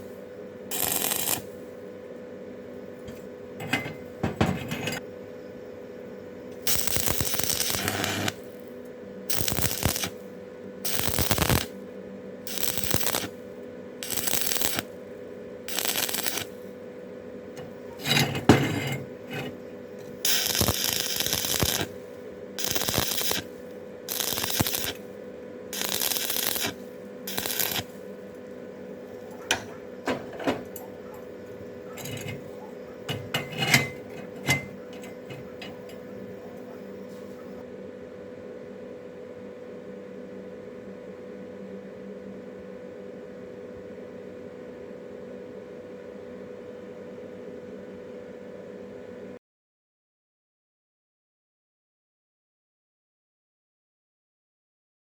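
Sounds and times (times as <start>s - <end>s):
welding arc crackling: 0.0s - 1.8s, 6.6s - 8.7s, 9.3s - 11.8s, 12.4s - 16.7s, 17.6s - 36.7s
faint steady hum: 0.0s - 49.4s.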